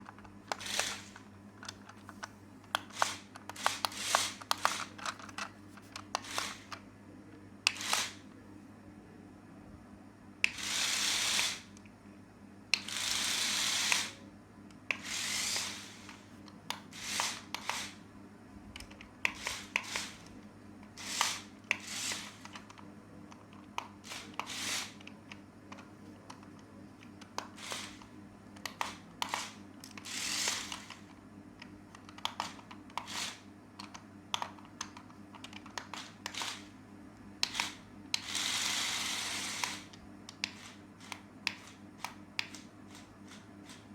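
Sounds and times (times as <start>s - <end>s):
handling clicks and taps: 0.0s - 6.8s, 31.6s - 33.1s, 33.8s - 36.4s
steady low hum: 0.0s - 43.9s.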